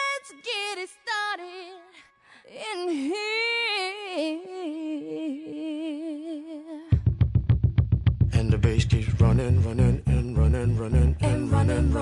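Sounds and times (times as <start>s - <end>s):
high voice singing with vibrato: 8.4s - 12.0s.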